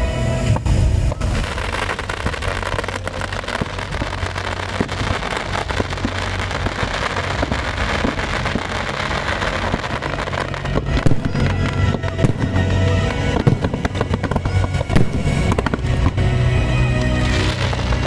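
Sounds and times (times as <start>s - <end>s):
fireworks crackling: 0.0s - 18.0s
low hum: 0.0s - 18.0s.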